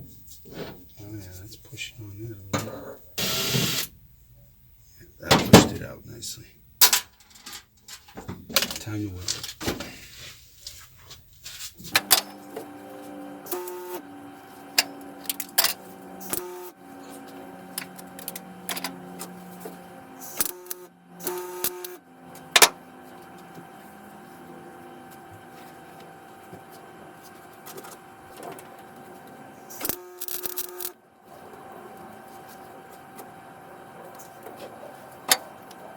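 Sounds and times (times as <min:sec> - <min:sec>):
arc welding bursts: 0:03.2 - 0:04.0, 0:12.2 - 0:25.6, 0:29.1 - 0:33.8
steady hum: 0:11.8 - 0:35.9.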